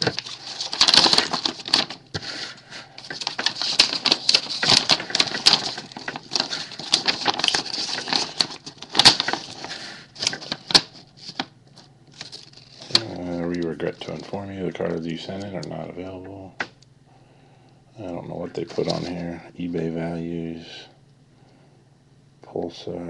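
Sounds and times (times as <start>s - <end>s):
paper and plastic crinkling: 0.0s - 15.8s, 18.5s - 19.4s.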